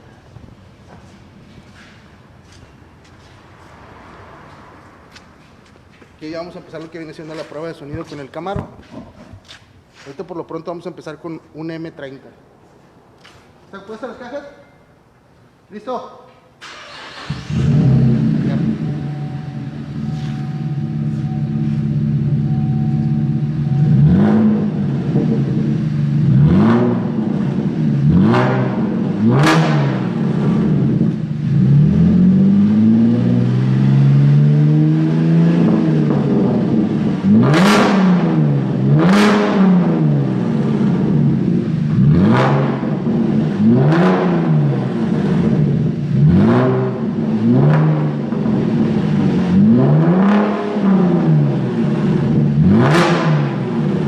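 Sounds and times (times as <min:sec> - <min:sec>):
car exhaust revving: 0:17.0 - 0:54.0.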